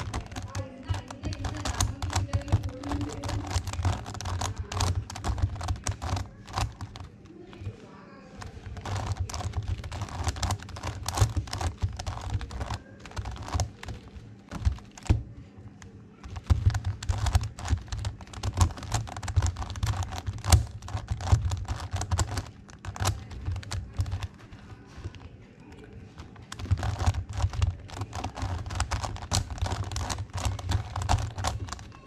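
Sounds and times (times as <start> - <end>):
plastic puzzle clicking: 0.0 - 7.8, 8.4 - 32.0.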